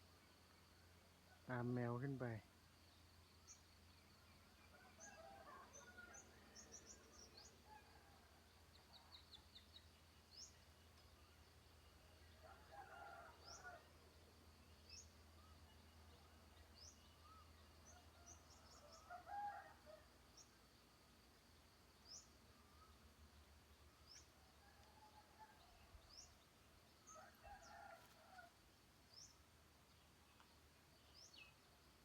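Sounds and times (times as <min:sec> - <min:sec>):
rooster crowing: 0:04.7 - 0:06.4.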